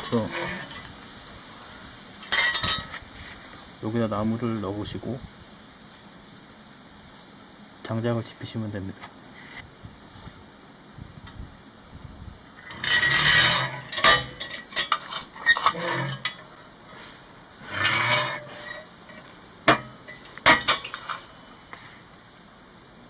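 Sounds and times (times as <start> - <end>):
cast iron clanking and scraping: 0.0 - 0.9, 2.2 - 3.0, 12.6 - 21.4.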